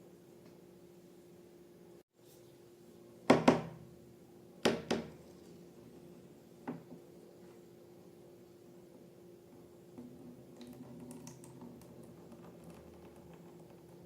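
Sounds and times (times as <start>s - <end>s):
faint steady hum: 0.0s - 14.0s.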